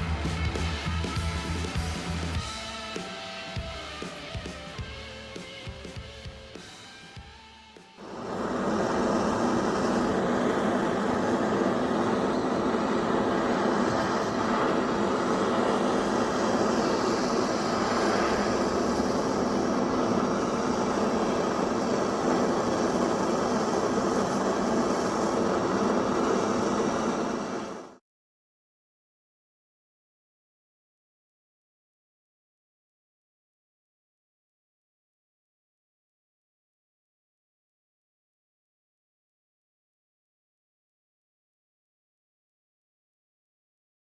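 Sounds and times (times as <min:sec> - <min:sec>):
loud machine noise: 0:08.0 - 0:27.9.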